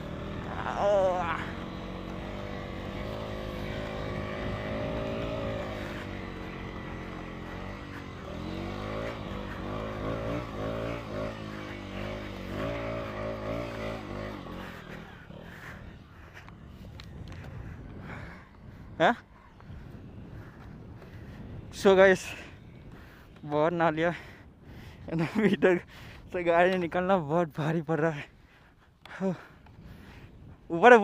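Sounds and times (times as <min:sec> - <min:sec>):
motorcycle engine revving: 0:00.0 - 0:21.4.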